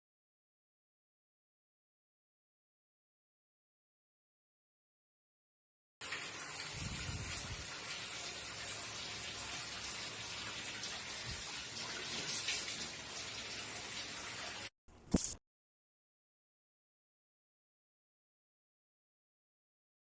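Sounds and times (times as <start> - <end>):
water running: 6.0 - 15.4.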